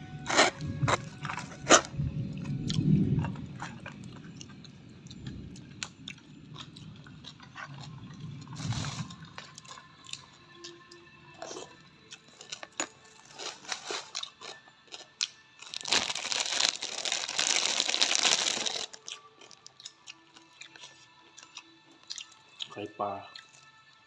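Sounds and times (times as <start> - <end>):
crunching and chewing food: 0.2 - 24.0.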